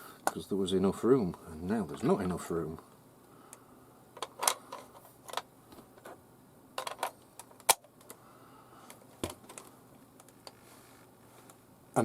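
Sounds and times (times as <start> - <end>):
batteries clicking into compartment: 4.2 - 5.5, 6.8 - 8.2.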